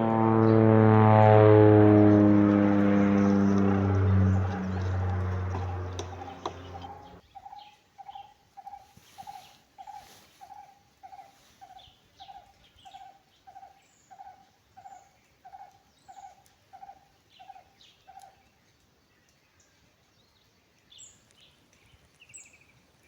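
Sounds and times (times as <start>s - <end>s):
bird repeating low note: 0.0s - 7.2s
steady tones: 0.8s - 7.2s
birds chirping faintly: 2.2s - 23.0s.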